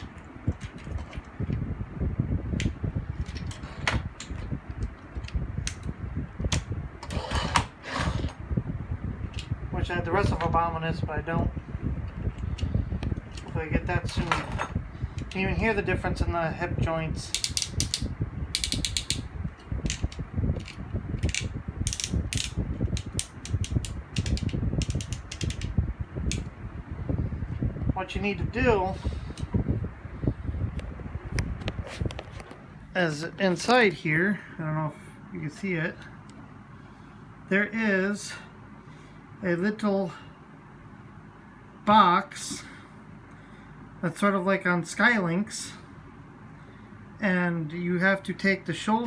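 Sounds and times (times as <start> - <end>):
low handling rumble: 0.0 - 38.0
plastic toy joints clicking: 17.3 - 25.7
rubbing and handling noise: 31.2 - 32.8.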